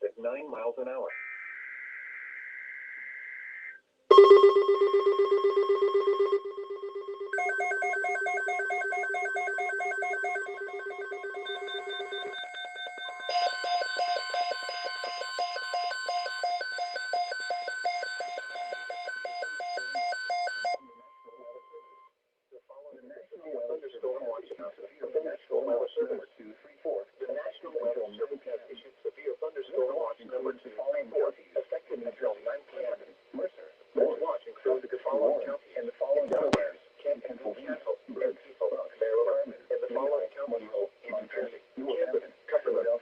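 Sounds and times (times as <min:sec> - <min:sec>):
steady alert tone: 0:04.1 - 0:18.6
rapid electronic alarm beeping: 0:04.1 - 0:22.1.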